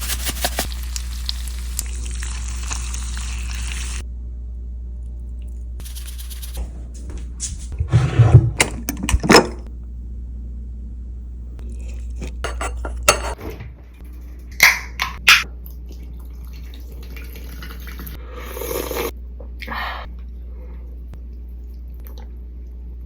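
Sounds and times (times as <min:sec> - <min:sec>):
dishes clinking and knocking: 0:12.5 - 0:13.6.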